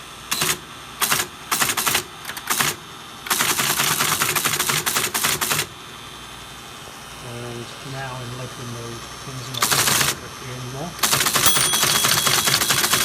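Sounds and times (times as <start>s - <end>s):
teleprinter mechanical clatter: 0.3s - 5.7s, 9.5s - 10.2s, 11.0s - 13.0s
steady low hum: 5.7s - 13.0s.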